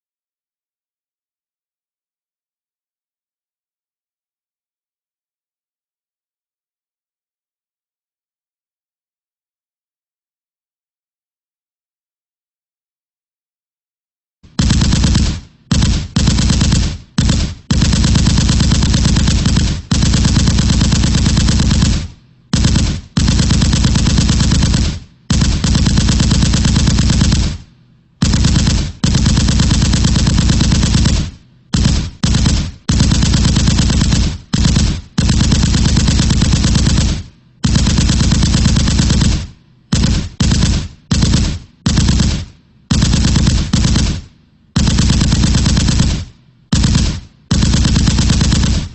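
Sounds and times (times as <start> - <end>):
machine gun firing bursts: 14.5 - 48.9.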